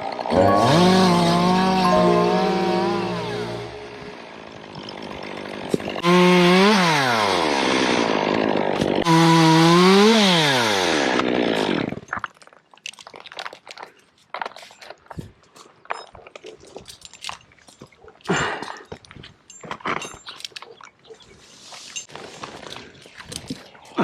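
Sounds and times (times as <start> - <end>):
chainsaw revving: 4.8 - 12.0.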